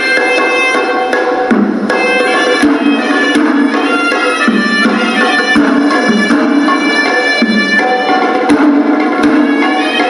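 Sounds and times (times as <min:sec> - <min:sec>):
drum strokes: 0:00.0 - 0:10.0
shawm playing melody: 0:00.0 - 0:10.0.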